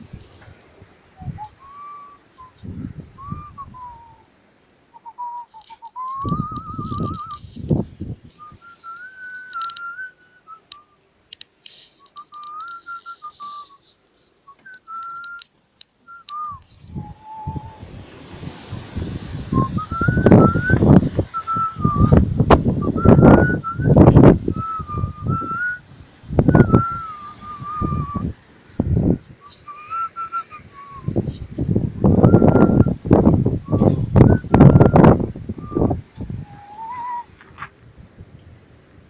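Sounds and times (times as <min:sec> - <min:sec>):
person whistling a tune: 0:01.2 - 0:02.6, 0:03.2 - 0:04.2, 0:05.0 - 0:07.4, 0:08.4 - 0:11.0, 0:12.1 - 0:13.8, 0:14.5 - 0:15.4, 0:16.1 - 0:17.8, 0:19.5 - 0:22.2, 0:22.8 - 0:25.8, 0:26.5 - 0:28.3, 0:29.5 - 0:31.2, 0:32.1 - 0:33.0, 0:33.6 - 0:37.3
sharp clicks: 0:05.4 - 0:07.8, 0:08.9 - 0:10.0, 0:10.6 - 0:14.0, 0:14.6 - 0:16.8.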